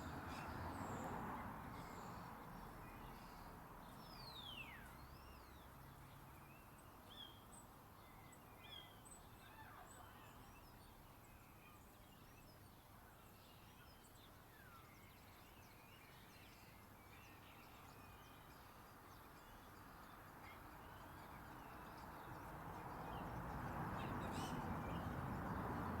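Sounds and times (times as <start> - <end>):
birds chirping: 19.2 - 26.0.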